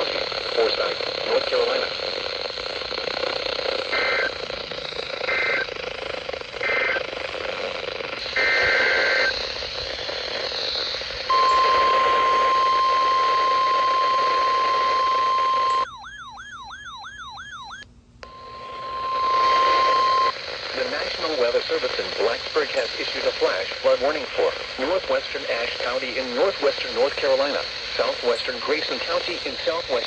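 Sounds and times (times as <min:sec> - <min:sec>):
steady warning tone: 0:00.0 - 0:30.0
data burst chirps: 0:08.2 - 0:23.0.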